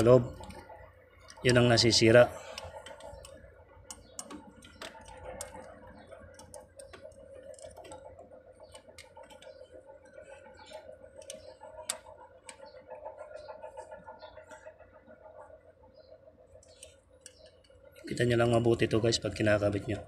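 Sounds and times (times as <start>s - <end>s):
faint steady hum: 0.0s - 20.0s
metal parts and tools clicking: 2.5s - 8.1s.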